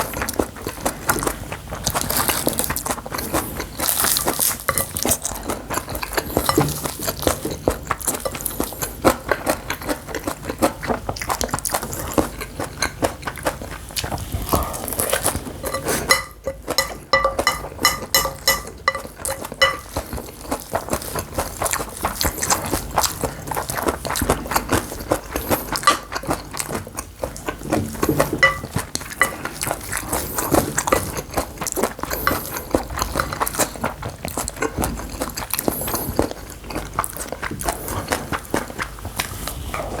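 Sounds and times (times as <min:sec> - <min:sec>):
spoon scraping and clinking bowl: 0:02.4 - 0:09.1, 0:14.9 - 0:20.6, 0:27.6 - 0:33.4.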